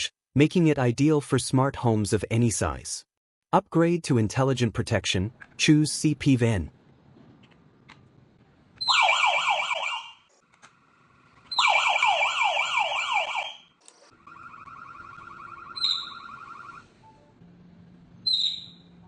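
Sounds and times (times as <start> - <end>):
alarm siren rising sweeps: 8.8 - 10.2, 11.5 - 17.0
fast warbling alarm tone: 8.8 - 10.2, 11.5 - 16.9.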